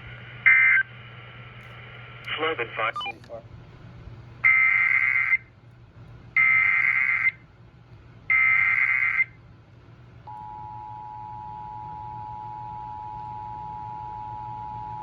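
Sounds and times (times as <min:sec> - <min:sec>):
digital data tone bursts: 0:03.0 - 0:03.4
two-tone attention signal: 0:03.0 - 0:03.4.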